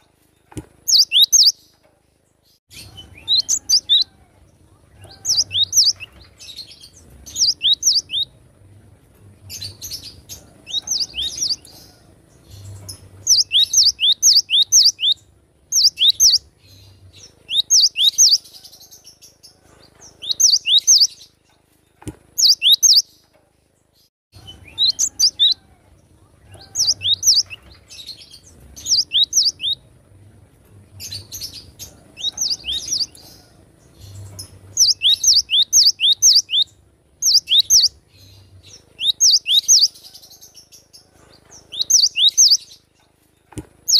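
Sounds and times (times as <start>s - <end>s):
bird singing high whistled notes: 0.9s - 1.6s, 13.3s - 15.2s, 20.2s - 21.1s, 28.8s - 29.8s, 34.8s - 38.0s, 39.0s - 40.0s, 41.7s - 42.7s.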